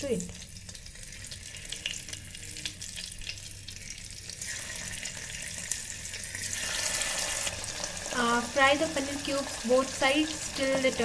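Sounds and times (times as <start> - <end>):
frying food sizzling in oil: 0.0 - 11.0.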